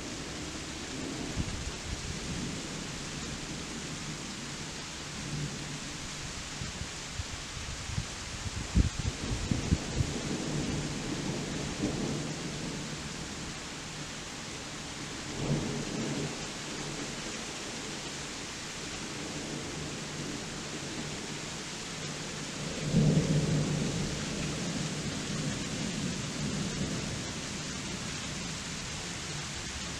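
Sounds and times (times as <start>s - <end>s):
steady rain hissing: 0.0s - 29.9s
rolling thunder: 8.7s - 12.8s.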